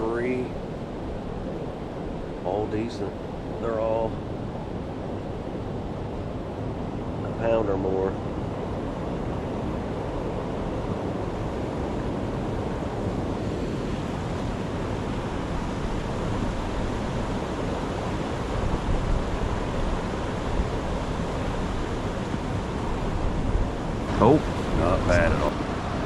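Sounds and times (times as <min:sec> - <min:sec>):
creek water rushing over rapids: 0:13.7 - 0:26.0.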